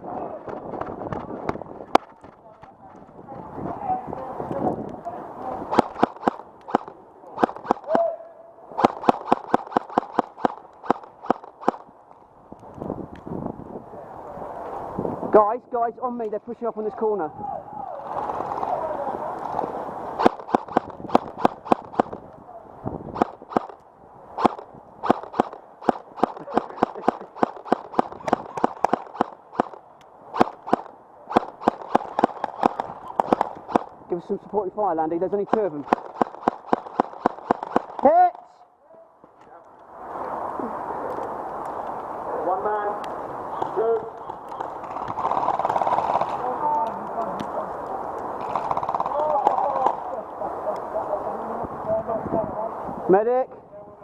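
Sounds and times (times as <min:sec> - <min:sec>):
airsoft guns firing single shots: 0:05.7 - 0:08.1, 0:08.8 - 0:11.9, 0:20.2 - 0:22.2, 0:23.2 - 0:23.8, 0:24.4 - 0:34.0, 0:35.4 - 0:38.3.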